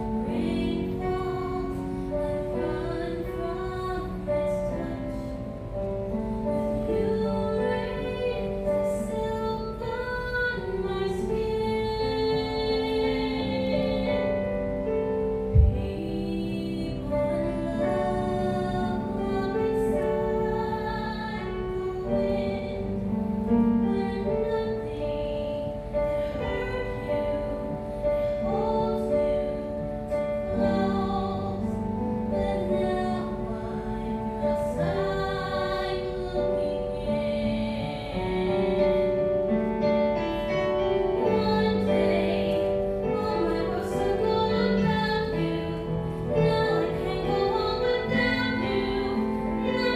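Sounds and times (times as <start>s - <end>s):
woman singing: 0.0s - 49.9s
low thump: 15.5s - 16.0s.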